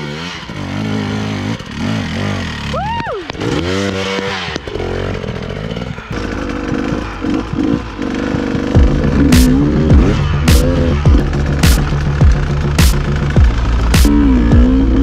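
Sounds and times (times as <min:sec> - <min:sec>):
dirt bike engine revving: 0:00.0 - 0:15.0
person whooping: 0:02.7 - 0:03.4.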